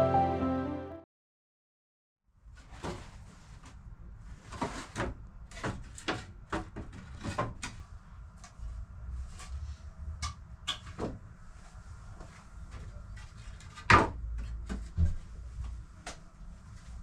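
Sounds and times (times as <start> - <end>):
wooden boards knocking and clattering: 13.6 - 15.2.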